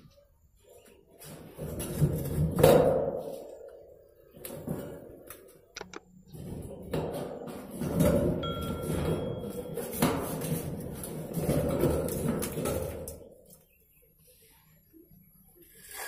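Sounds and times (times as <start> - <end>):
metallic knocks and clanks: 6.8 - 13.2.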